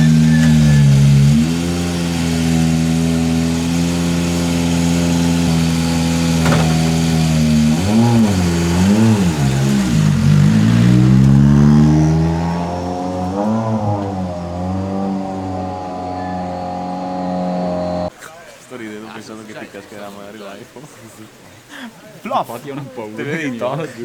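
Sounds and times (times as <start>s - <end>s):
car engine revving: 0.0s - 18.1s
brief knock: 6.4s - 7.0s.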